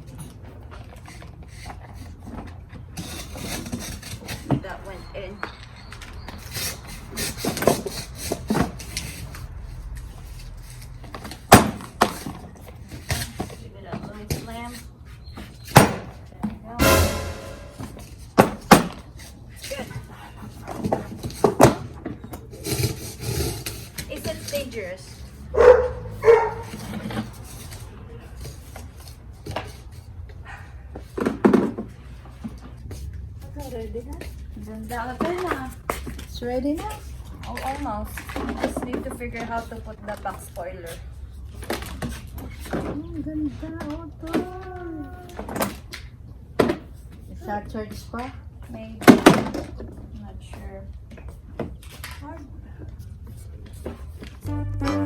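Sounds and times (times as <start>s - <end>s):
dog barking: 25.5s - 26.8s.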